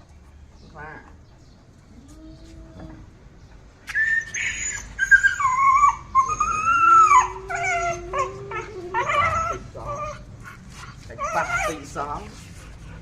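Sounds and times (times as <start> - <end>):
dog whining: 3.9 - 10.3, 11.1 - 12.2.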